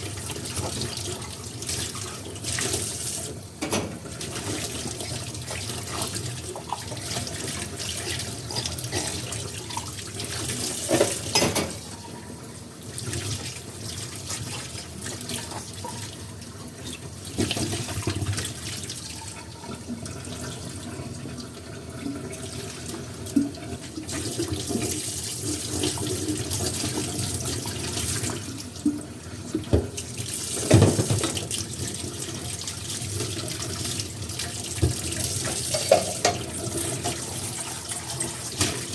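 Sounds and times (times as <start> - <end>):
tap water running into sink: 0.0 - 38.9
dishes clinking and knocking: 3.6 - 4.0, 10.8 - 12.2, 30.6 - 31.4, 35.7 - 36.5.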